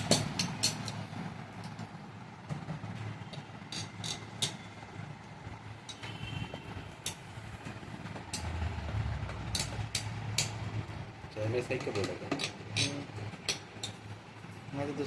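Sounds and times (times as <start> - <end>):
computer parts clicking and tapping: 0.0 - 4.7, 5.8 - 8.6, 9.2 - 10.8, 11.6 - 14.0.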